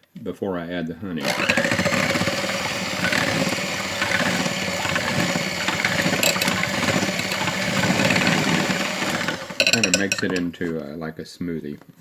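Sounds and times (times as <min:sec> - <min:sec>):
electric kitchen mixer running: 0:01.2 - 0:10.2.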